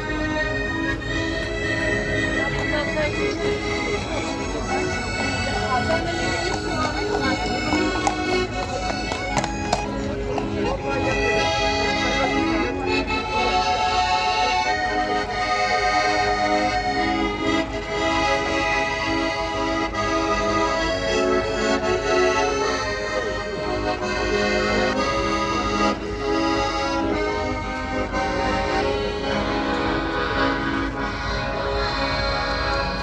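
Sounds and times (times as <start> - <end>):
button accordion playing folk tune: 0.0 - 33.0.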